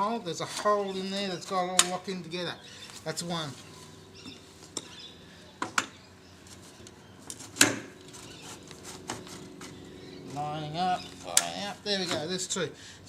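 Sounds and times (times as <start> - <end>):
sharp knocks and clunks: 5.6 - 6.0, 7.5 - 8.0.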